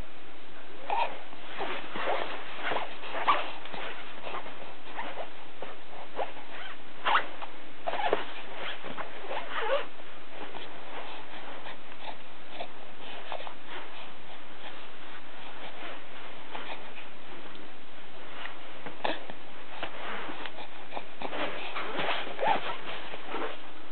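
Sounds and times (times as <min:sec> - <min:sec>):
steady hiss: 0:00.0 - 0:23.9
baby sniffing and snuffling: 0:10.5 - 0:17.0, 0:19.0 - 0:23.6.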